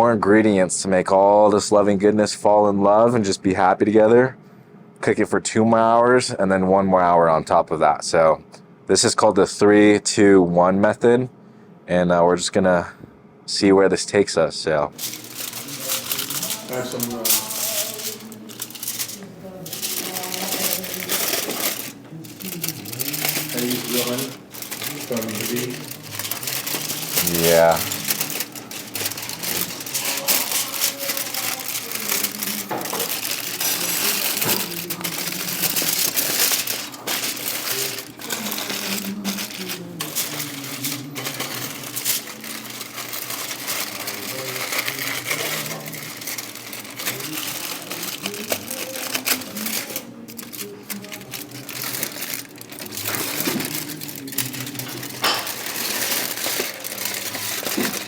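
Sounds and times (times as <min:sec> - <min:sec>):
dense crinkling: 0:15.0 - 0:58.0.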